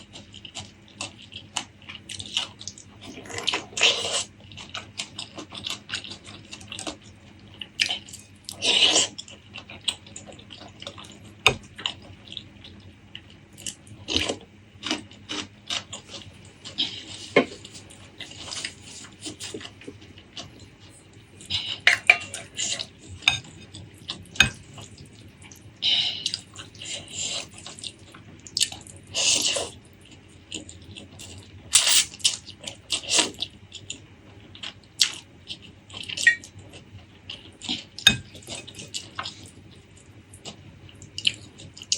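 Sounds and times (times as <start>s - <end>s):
wet chewing and smacking: 0.0s - 41.9s
cutlery clinking against dish: 23.2s - 23.5s, 38.1s - 38.4s.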